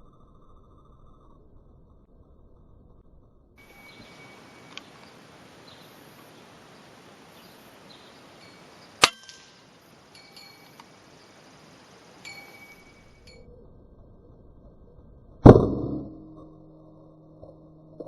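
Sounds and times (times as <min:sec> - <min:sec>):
rifle shot: 0:09.0 - 0:09.6.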